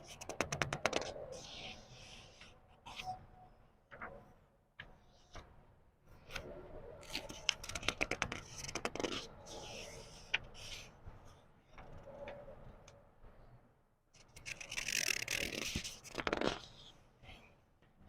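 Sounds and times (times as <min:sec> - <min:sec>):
book pages turning: 0:07.0 - 0:10.9, 0:14.2 - 0:16.9.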